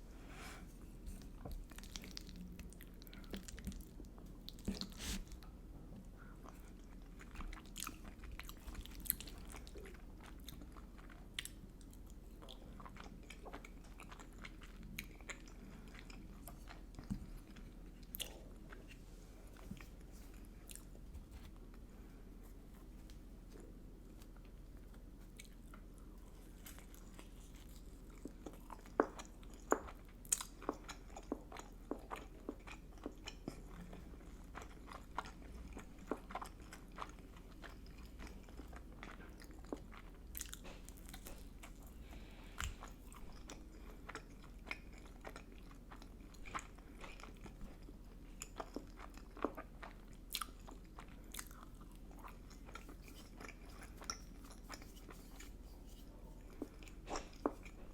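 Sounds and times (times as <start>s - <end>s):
faint low hum: 0.0s - 57.9s
chewing and biting food: 23.5s - 57.9s.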